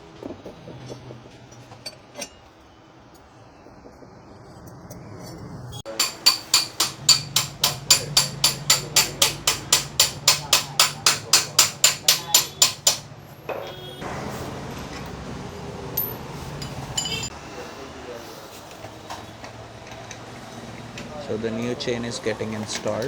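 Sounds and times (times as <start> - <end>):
hammer striking metal: 5.9 - 13.8.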